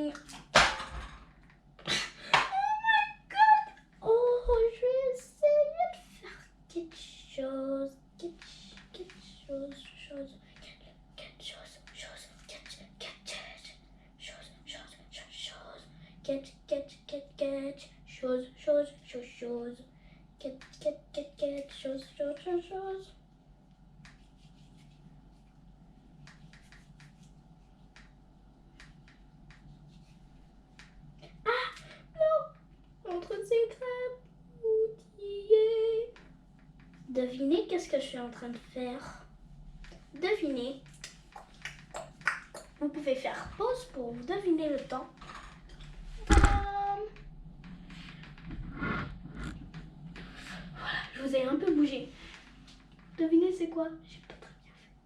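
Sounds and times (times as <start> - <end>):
girl singing wordless high notes: 2.5 - 10.4, 31.4 - 36.2, 46.5 - 47.2.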